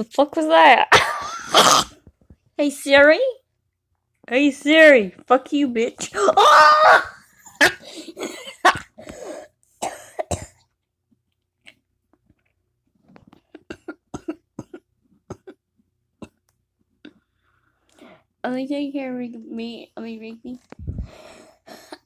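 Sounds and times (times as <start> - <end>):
person coughing: 0.9 - 2.0, 7.4 - 9.0, 9.8 - 10.6, 13.6 - 15.6.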